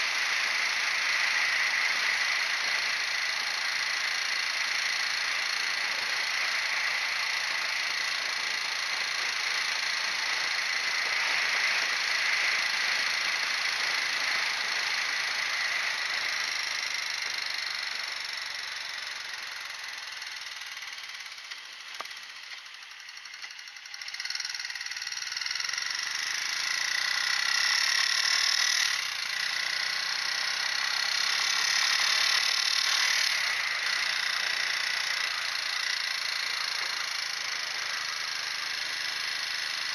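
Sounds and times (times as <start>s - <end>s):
motorcycle engine: 0.0s - 39.9s.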